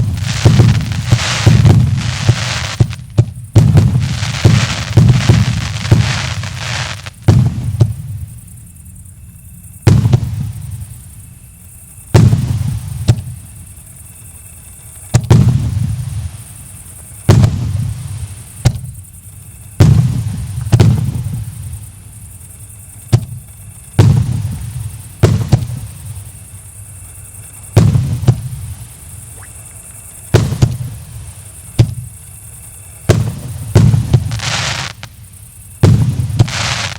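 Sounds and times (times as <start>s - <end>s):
firework cake bangs: 0.0s - 8.2s, 12.2s - 13.4s, 19.8s - 21.4s, 25.2s - 25.9s, 30.4s - 31.0s, 33.1s - 35.1s, 35.8s - 36.9s.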